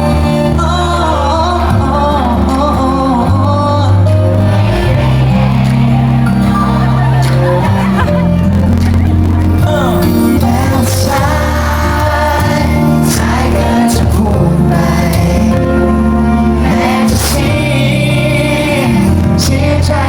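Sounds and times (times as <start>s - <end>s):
acoustic guitar: 0.0s - 20.0s
string backing: 0.0s - 20.0s
sustained bass notes: 0.0s - 20.0s
wordless vocal line: 0.0s - 20.0s.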